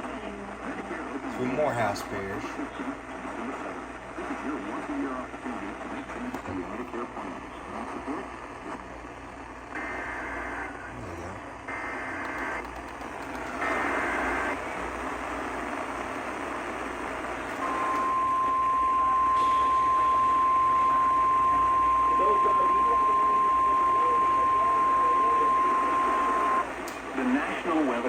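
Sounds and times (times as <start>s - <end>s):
radio hiss: 0.0s - 28.0s
steady alarm tone: 9.8s - 12.6s, 17.5s - 26.7s
warbling data tones: 17.6s - 26.7s.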